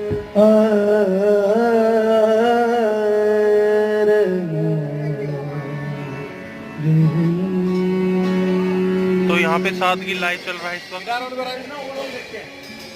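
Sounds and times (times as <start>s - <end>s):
sustained instrumental drone: 3.6s - 12.9s.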